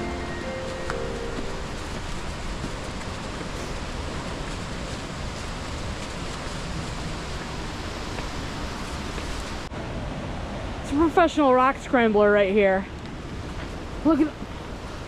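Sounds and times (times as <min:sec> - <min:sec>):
river rapids rushing: 0:00.0 - 0:09.7.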